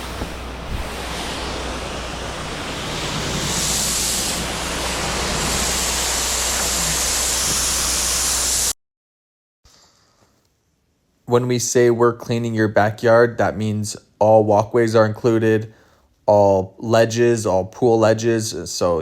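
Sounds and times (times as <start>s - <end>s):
pressure washer machine hum: 0.0s - 8.8s
pressure washer water spray hissing: 0.0s - 8.8s.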